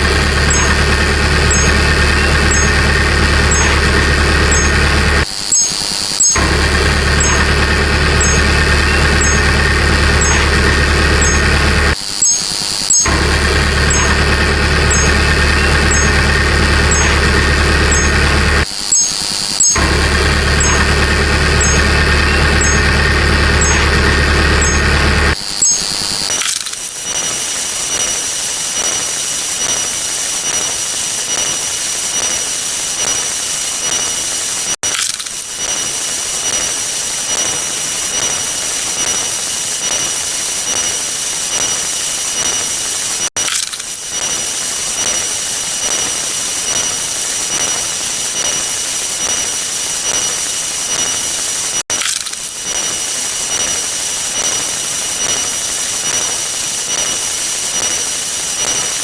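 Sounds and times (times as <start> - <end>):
bulldozer engine running: 0.0 - 19.0, 19.6 - 25.8.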